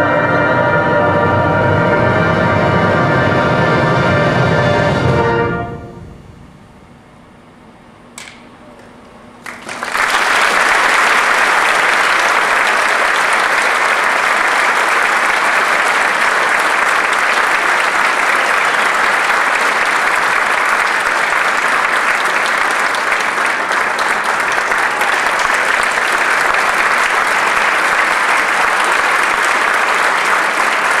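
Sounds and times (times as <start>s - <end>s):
audience applause: 9.4s - 31.0s.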